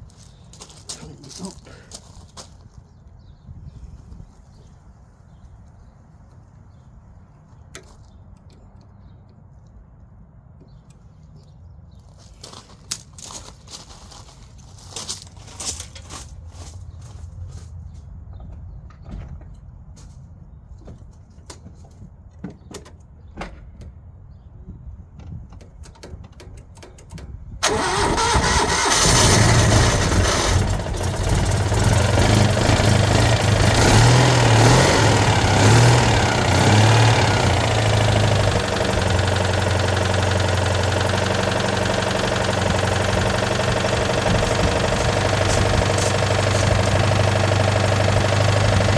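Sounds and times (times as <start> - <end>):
car engine starting and idling: 26.7 - 48.9.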